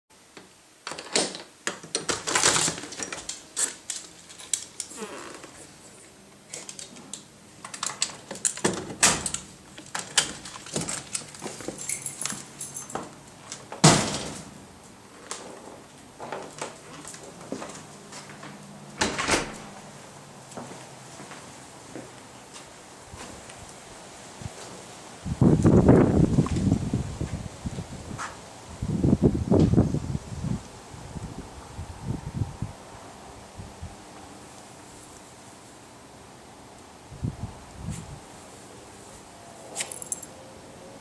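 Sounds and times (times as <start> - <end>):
door opening clicks and rattles: 0.8 - 5.6, 6.5 - 14.6, 15.3 - 19.8
keys jingling: 9.2 - 13.2, 39.8 - 40.3
loud door bang: 13.8 - 14.5.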